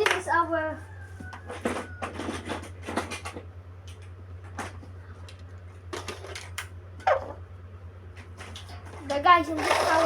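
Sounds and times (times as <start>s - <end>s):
plastic toys tapping and scraping: 0.0s - 0.4s, 1.2s - 7.4s
steady low hum: 0.0s - 10.0s.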